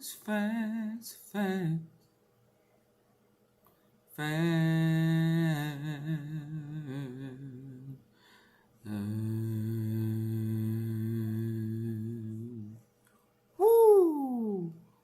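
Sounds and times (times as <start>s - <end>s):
woman humming: 13.6s - 14.8s.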